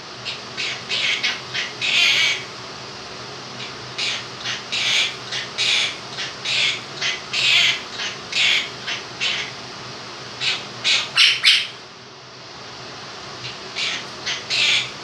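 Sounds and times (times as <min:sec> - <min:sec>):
electric fan humming: 0:00.0 - 0:15.0
parrot squawking: 0:00.2 - 0:02.5, 0:03.6 - 0:09.6, 0:10.4 - 0:11.8, 0:13.4 - 0:15.0.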